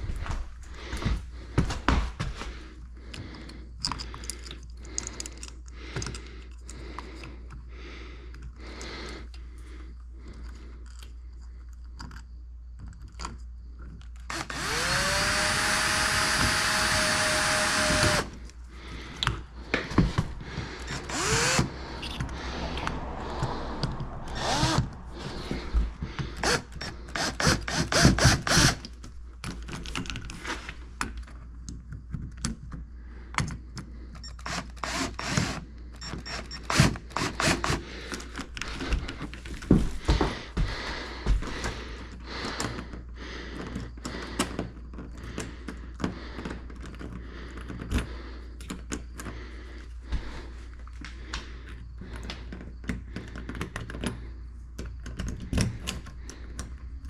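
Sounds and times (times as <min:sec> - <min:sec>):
power drill spinning: 0:14.2 - 0:18.6, 0:19.9 - 0:29.0, 0:34.2 - 0:40.3.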